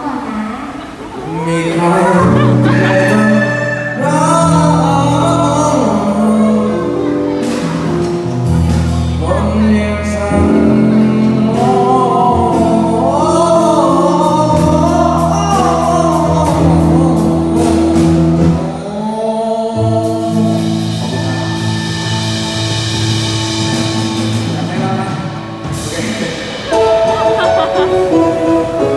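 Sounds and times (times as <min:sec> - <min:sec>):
live pop-rock band: 0:00.8 - 0:28.9
man singing: 0:01.3 - 0:07.8, 0:08.6 - 0:28.9.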